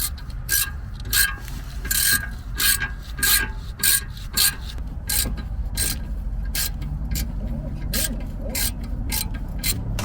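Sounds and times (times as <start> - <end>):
ratchet wrench clicking: 0.0 - 10.0.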